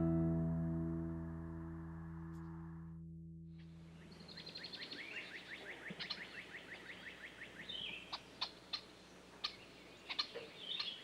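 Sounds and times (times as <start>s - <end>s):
sharp bird ticking calls: 4.0s - 11.0s
bird trilling and warbling: 4.2s - 11.0s.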